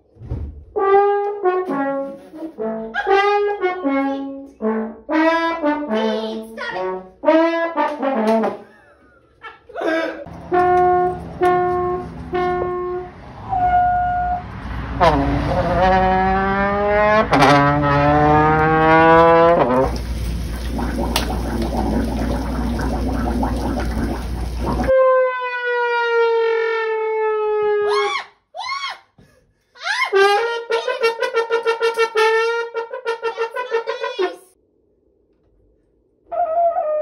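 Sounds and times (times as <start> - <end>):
comedic brass horn notes: 0.8 - 8.8, 10.2 - 20.1, 24.8 - 28.0, 30.1 - 34.5.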